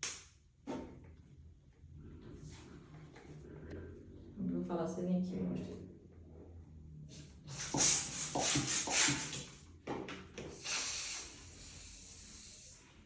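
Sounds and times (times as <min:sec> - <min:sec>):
hand pump inflating balloon: 0:07.5 - 0:09.5, 0:10.5 - 0:12.8.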